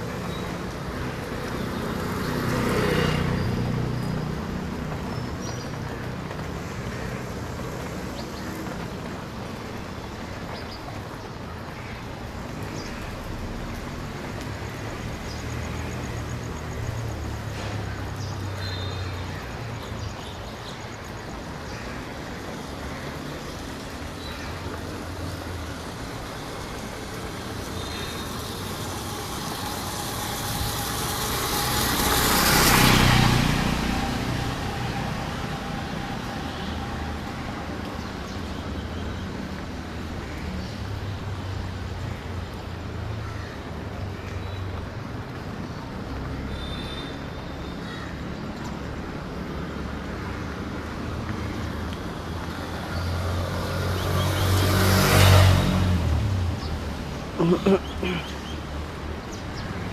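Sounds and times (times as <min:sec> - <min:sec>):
low engine hum of traffic: 0:00.0 - 0:59.9
vehicle passing close: 0:26.5 - 0:37.6, 0:52.6 - 0:58.3.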